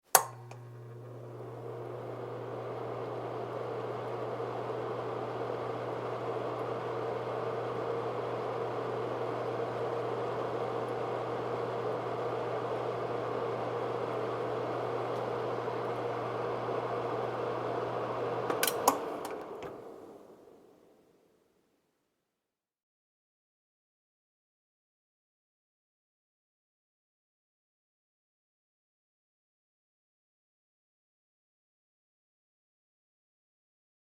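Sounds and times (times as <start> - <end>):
fan heater humming: 0.0 - 21.2
switch clicks: 0.1 - 0.7, 18.5 - 19.7.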